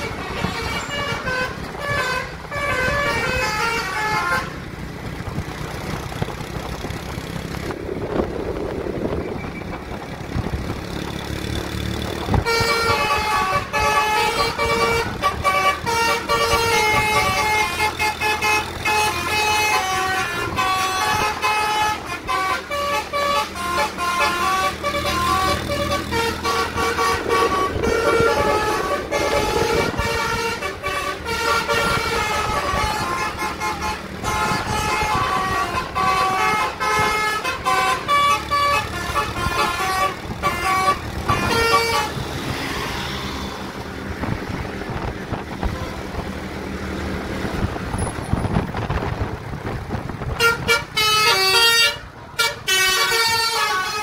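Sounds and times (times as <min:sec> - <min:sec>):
multi-tone air horn melody: 0:00.0 - 0:04.6, 0:12.3 - 0:42.9, 0:50.4 - 0:54.0
vehicle noise: 0:00.0 - 0:54.0.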